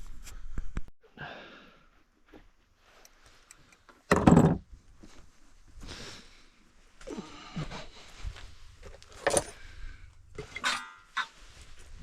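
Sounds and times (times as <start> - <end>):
person exhaling: 1.2 - 1.9, 7.0 - 8.1.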